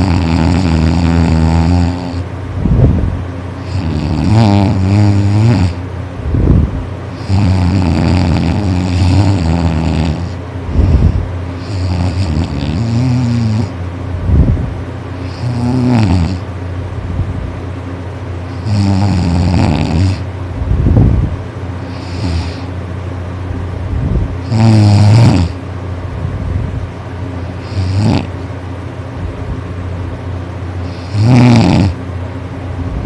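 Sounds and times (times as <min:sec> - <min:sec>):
person snoring loudly: 0:00.0 - 0:02.2, 0:03.6 - 0:05.8, 0:07.2 - 0:13.8, 0:15.2 - 0:16.4, 0:18.5 - 0:20.3, 0:21.9 - 0:22.7, 0:24.4 - 0:25.6, 0:27.6 - 0:28.3, 0:30.8 - 0:32.0.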